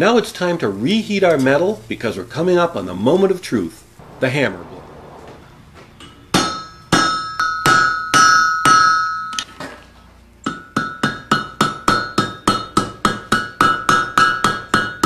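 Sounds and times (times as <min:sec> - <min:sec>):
hammer striking iron on anvil: 0:06.0 - 0:09.5, 0:10.4 - 0:15.0.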